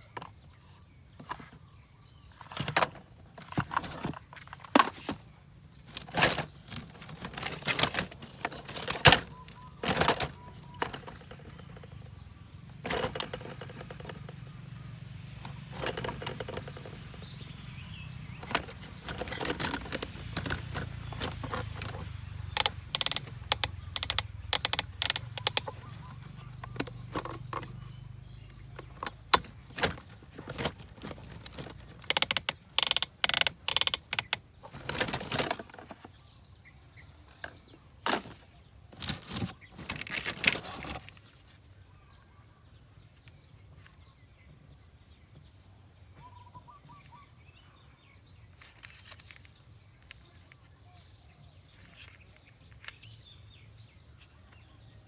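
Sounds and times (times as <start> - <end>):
model cars clicking and clacking: 18.4 - 36.1.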